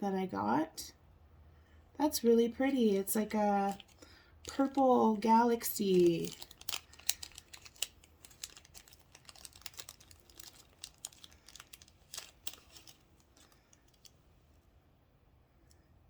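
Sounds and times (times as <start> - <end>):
plastic packaging crinkling: 3.1 - 14.3.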